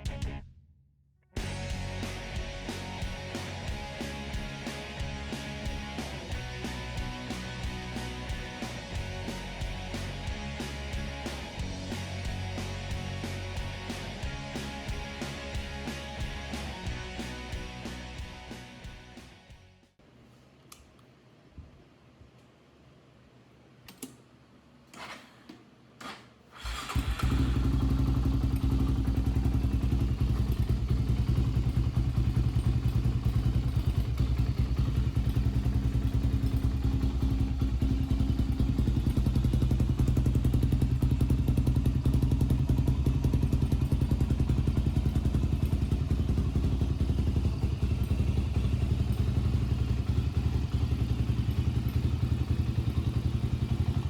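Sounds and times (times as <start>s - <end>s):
quad engine running: 26.6s - 54.0s.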